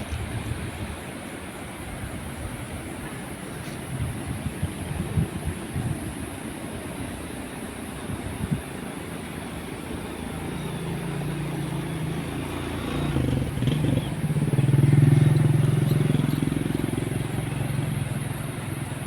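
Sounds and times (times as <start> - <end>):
vehicle engine droning: 9.4 - 19.0.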